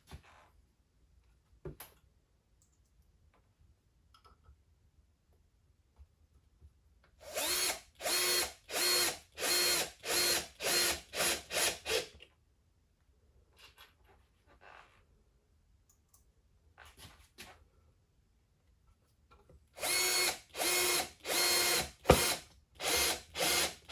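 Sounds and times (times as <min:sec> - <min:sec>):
power drill driving screws into wood: 0:07.2 - 0:12.2, 0:19.8 - 0:23.9.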